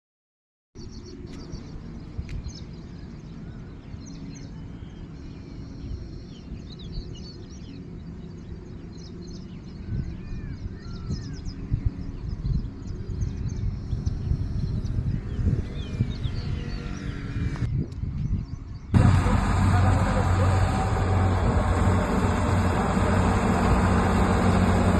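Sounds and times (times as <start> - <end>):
birds chirping: 0.8 - 24.9
steady low rumble: 11.2 - 24.9.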